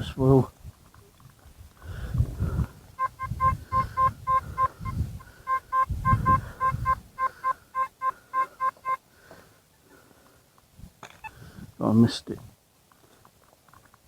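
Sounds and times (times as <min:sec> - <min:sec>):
metal detector beeping: 0:03.0 - 0:09.0.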